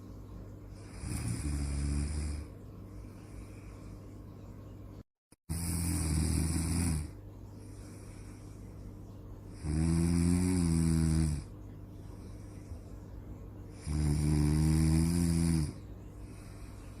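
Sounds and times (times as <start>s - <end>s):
steady low hum: 0.0s - 17.0s
person snoring: 0.8s - 2.5s, 5.5s - 7.2s, 9.5s - 11.5s, 13.7s - 17.0s.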